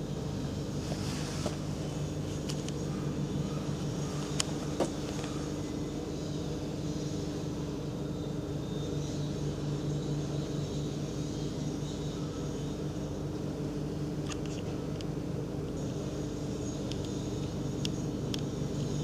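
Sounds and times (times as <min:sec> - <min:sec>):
machine hum: 0:00.0 - 0:19.0
light ticks: 0:17.8 - 0:18.9.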